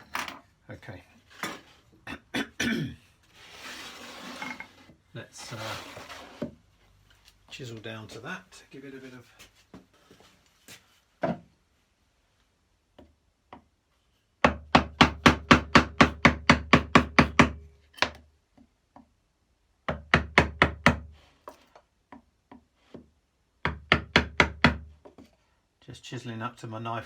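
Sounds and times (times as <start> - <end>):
mallet tapping wood chisel: 14.4 - 18.2, 19.9 - 21.0, 23.6 - 24.8.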